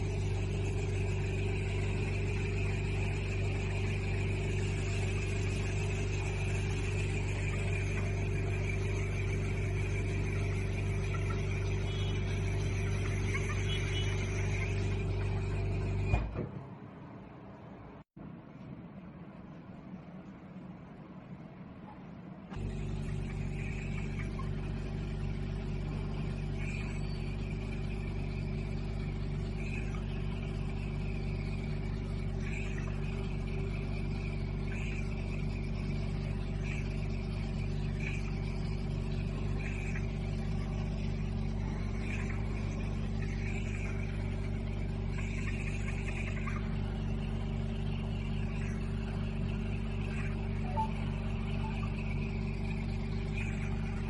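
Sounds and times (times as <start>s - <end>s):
vacuum pump humming: 0.0s - 17.0s, 22.5s - 54.0s
faint high blips: 50.1s - 52.8s.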